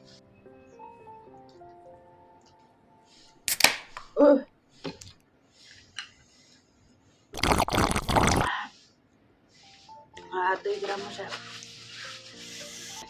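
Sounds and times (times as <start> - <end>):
slurping noodles: 7.3 - 8.6.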